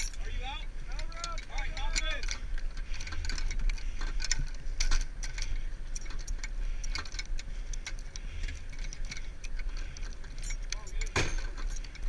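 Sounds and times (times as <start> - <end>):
loose metal gear rattling: 0.0 - 12.0
truck engine rumbling: 0.0 - 12.0.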